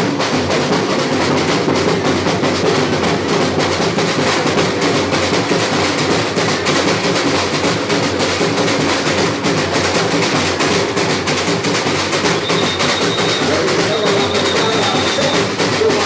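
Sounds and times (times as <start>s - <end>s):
samba percussion ensemble: 0.0s - 16.0s.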